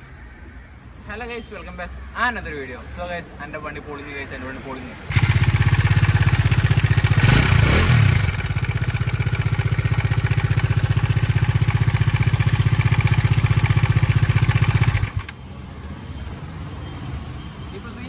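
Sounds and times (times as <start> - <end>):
motorcycle engine idling with clatter: 5.1 - 15.4.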